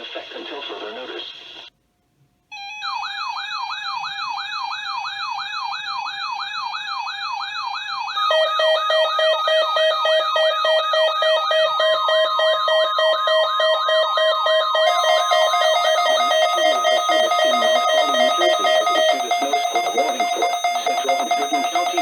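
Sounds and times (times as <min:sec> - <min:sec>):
electronic siren yelping: 0:02.5 - 0:22.0
steady alarm tone: 0:02.5 - 0:22.0.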